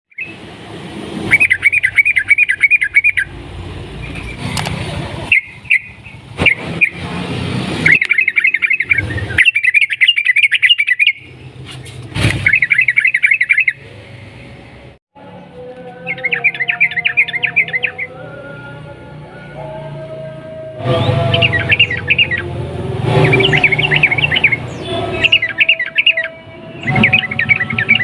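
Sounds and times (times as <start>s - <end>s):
bird singing rolling trills: 1.3s - 3.4s, 5.2s - 7.0s, 7.9s - 11.6s, 12.4s - 14.4s, 15.2s - 20.0s, 20.8s - 28.0s.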